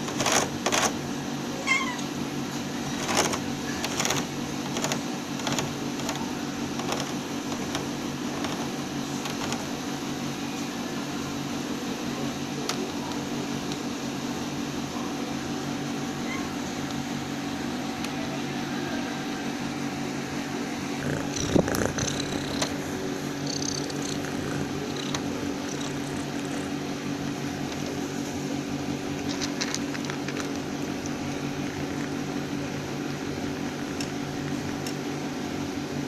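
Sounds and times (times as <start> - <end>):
cat snoring: 21.0 - 26.7.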